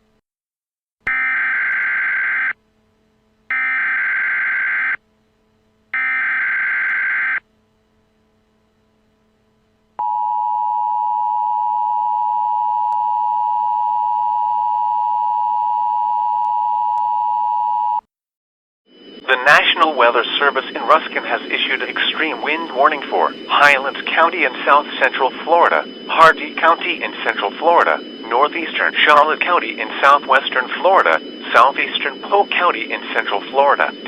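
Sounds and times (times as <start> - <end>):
steady attention tone: 18.9 - 34.0.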